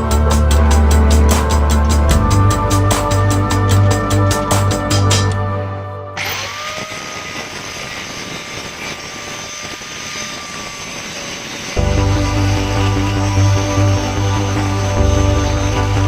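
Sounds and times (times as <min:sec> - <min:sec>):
background music with beat: 0:00.0 - 0:06.2
small motor running: 0:06.2 - 0:16.0.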